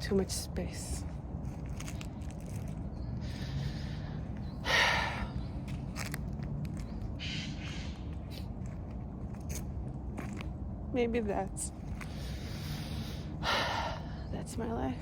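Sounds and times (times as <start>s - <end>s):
soft footsteps: 0.8s - 3.2s, 5.6s - 7.2s, 8.0s - 12.3s
crow cawing: 7.2s - 8.0s.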